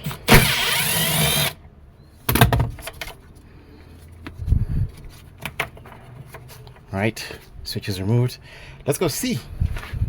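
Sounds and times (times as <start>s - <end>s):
noisy whir: 0.0s - 1.6s.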